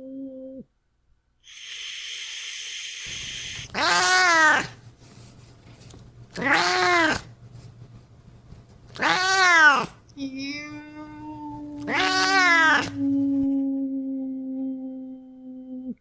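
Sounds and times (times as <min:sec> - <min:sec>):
cat hissing: 0:01.4 - 0:04.8, 0:06.4 - 0:07.3, 0:09.0 - 0:10.0, 0:11.8 - 0:13.0
cat yowling: 0:01.5 - 0:04.8, 0:06.4 - 0:07.3, 0:09.0 - 0:13.4.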